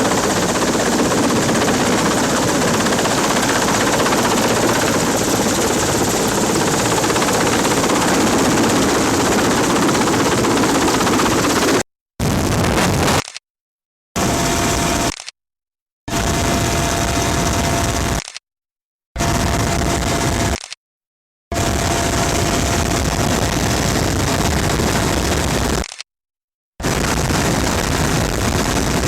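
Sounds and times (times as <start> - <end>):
helicopter engine and rotor: 0.0 - 11.8, 14.2 - 15.1, 16.1 - 18.1, 19.2 - 20.5, 21.6 - 23.3.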